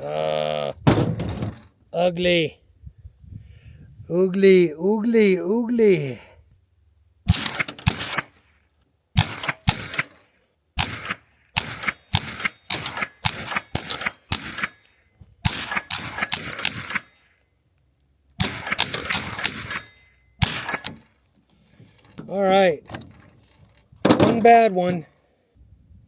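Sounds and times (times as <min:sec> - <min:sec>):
suppressed rifle shots: 0:07.3 - 0:08.6, 0:09.2 - 0:14.8, 0:15.4 - 0:17.2, 0:18.4 - 0:21.1
steel targets ringing: 0:11.6 - 0:17.4, 0:18.4 - 0:21.1.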